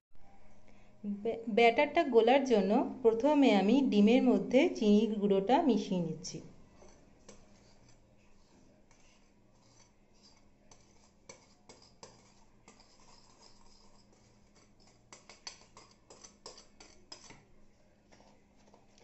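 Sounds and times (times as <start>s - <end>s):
utensil scraping mixing bowl: 6.6s - 19.0s.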